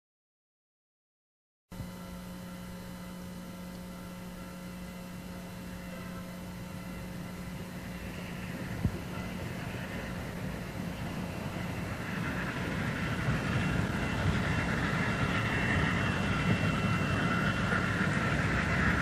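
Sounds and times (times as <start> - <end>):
steady hum: 1.7 - 19.0
faint steam locomotive: 1.8 - 19.0
steam hiss: 7.0 - 19.0.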